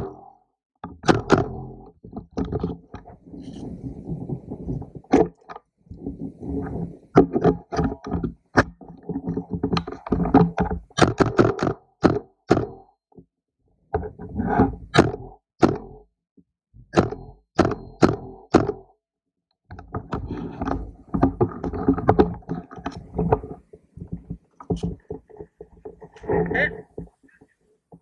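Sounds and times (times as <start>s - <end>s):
rubbing and rumbling: 1.0s - 11.7s, 13.9s - 15.4s, 19.8s - 28.0s.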